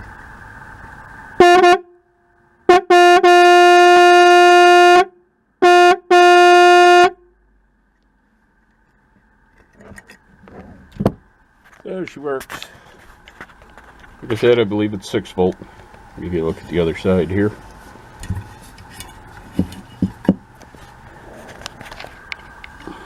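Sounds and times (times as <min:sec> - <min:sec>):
electric horn honking: 0:01.4 - 0:07.3.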